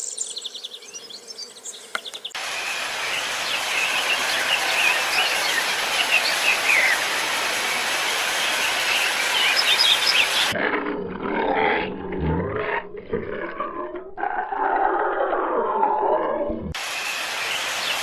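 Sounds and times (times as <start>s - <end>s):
bird chirps: 0.0s - 7.0s, 8.7s - 10.6s
steady rushing noise: 2.4s - 10.6s
tiger roaring: 10.6s - 16.8s.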